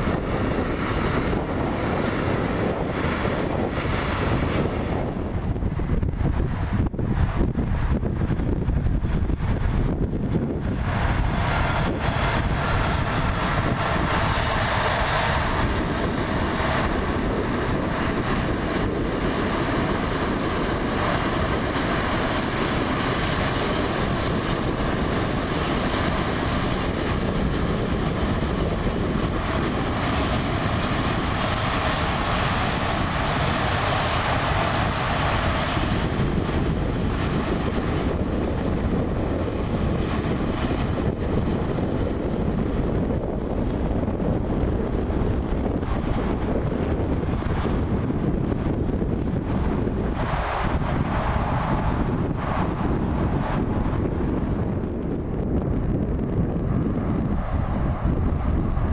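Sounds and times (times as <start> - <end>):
wind buffeting microphone: 0.0 - 58.9
train rolling past: 49.4 - 54.8.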